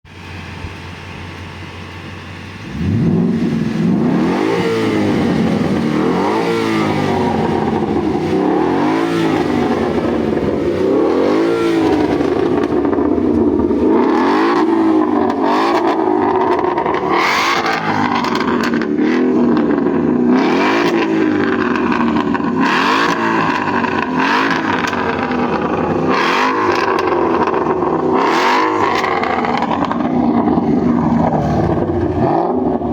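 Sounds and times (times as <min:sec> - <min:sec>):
motorcycle engine revving: 0:02.6 - 0:32.9
sharp exhaust cracks: 0:02.8 - 0:32.9.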